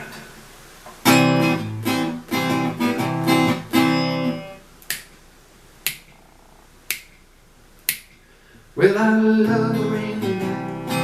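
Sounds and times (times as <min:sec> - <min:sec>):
guitar strumming chords: 0:01.0 - 0:04.7, 0:08.8 - 0:11.0
finger snaps: 0:04.8 - 0:05.2, 0:05.8 - 0:06.2, 0:06.9 - 0:07.2, 0:07.8 - 0:08.2.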